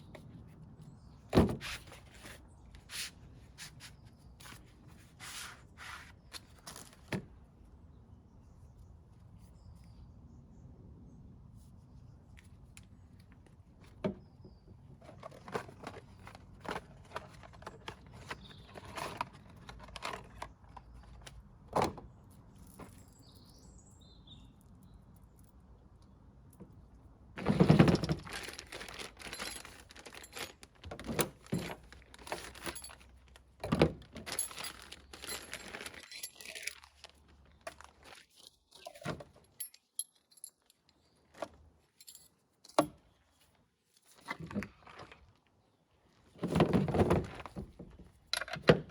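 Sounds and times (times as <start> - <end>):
rustling and clatter: 13.2 - 23.2, 27.4 - 42.3, 46.2 - 48.9.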